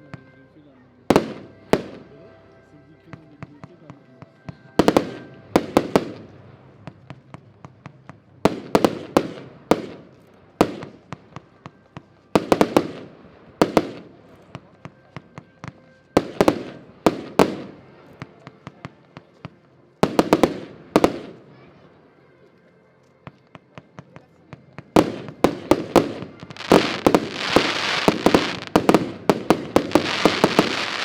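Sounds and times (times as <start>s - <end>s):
firework bangs with echo: 4.8s - 6.3s, 6.9s - 11.3s, 12.4s - 14.2s, 24.8s - 31.0s.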